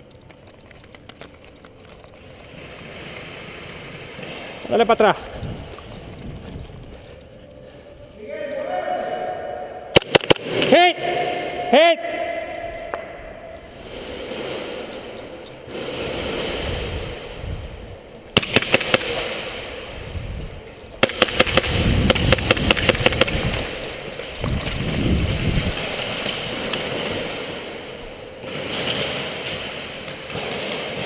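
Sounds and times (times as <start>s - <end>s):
airsoft guns firing: 9.9s - 11.1s, 18.4s - 20.0s, 21.0s - 24.4s, 25.7s - 31.0s.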